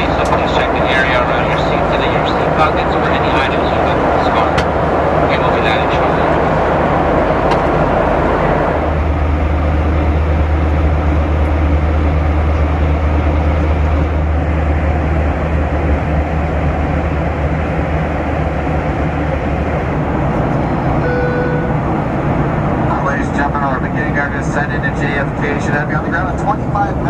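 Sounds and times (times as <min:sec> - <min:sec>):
airflow over aircraft fuselage: 0:00.0 - 0:27.0
jet engines humming: 0:00.0 - 0:27.0
low cabin rumble: 0:00.0 - 0:27.0
short cabin chime: 0:20.7 - 0:22.4.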